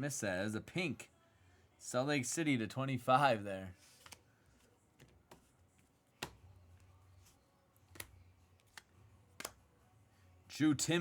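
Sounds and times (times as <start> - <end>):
trading cards being flipped: 3.8 - 9.6.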